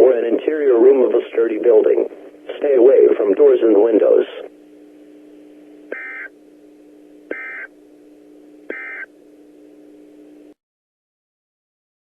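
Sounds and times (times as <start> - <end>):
steady low hum: 0.0 - 10.6
warbling data tone bursts: 5.9 - 6.3, 7.3 - 7.7, 8.7 - 9.1.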